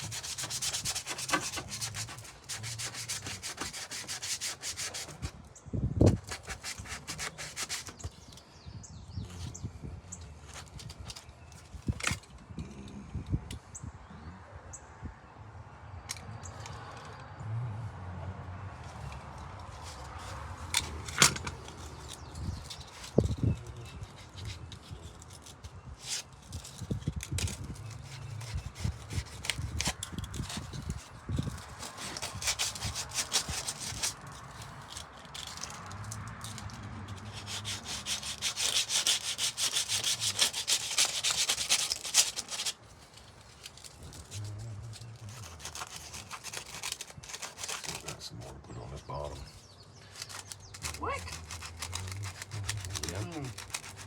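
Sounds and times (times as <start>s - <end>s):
fast sanding strokes: 0.0s - 5.3s, 6.1s - 8.2s, 27.4s - 34.7s, 36.4s - 42.8s, 45.2s - 48.2s, 50.2s - 54.0s
hand rubbing and scraping: 0.0s - 8.4s, 18.8s - 54.0s.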